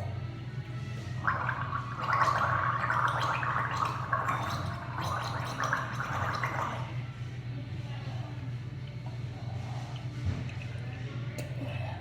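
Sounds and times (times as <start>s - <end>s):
person gargling water: 1.3s - 7.0s.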